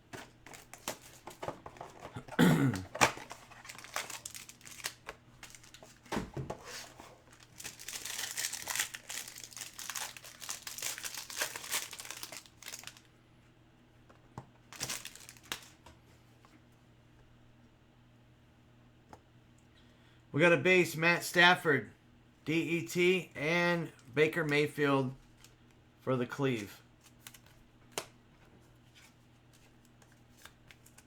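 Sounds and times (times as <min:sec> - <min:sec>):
plastic wrapping crinkling and tearing: 0:00.4 - 0:06.1, 0:06.7 - 0:13.0, 0:14.7 - 0:15.8.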